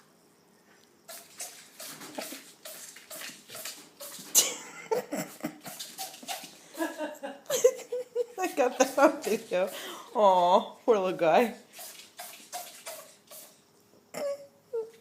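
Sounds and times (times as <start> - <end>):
ferret sneezing: 5.4 - 6.6, 11.7 - 13.6.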